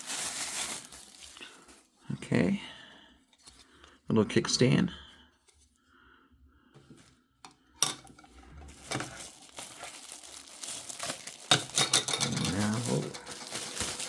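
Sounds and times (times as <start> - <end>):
plastic packaging crinkling: 0.0 - 2.0, 7.8 - 14.0
handling clicks and knocks: 11.0 - 14.0.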